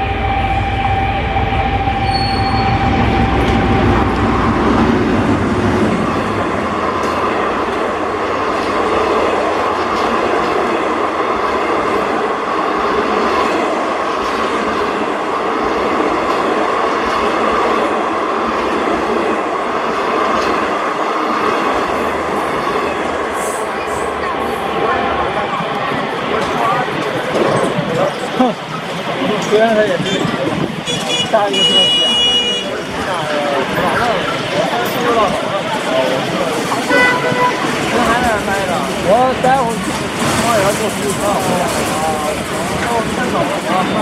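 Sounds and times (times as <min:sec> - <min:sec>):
high ring from train wheels: 0:00.0 - 0:04.2
steady tone: 0:00.0 - 0:08.0
heavy low rumble: 0:00.0 - 0:08.5
train coaches rolling past: 0:00.0 - 0:44.0.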